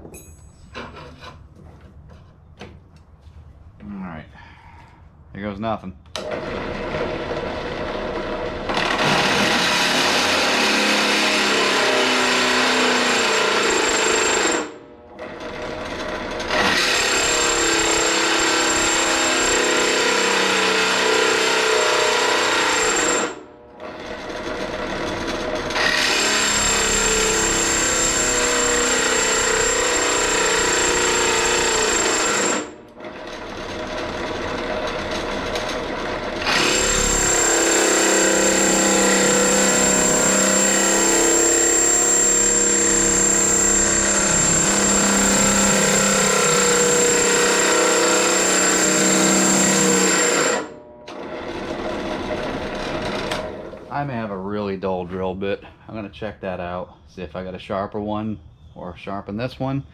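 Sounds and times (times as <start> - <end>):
drill press cutting steel: 6.2 - 53.8.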